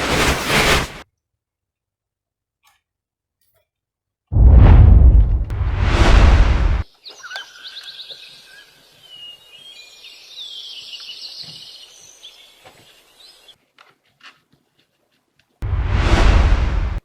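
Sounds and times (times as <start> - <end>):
songbirds chirping: 6.9 - 13.6.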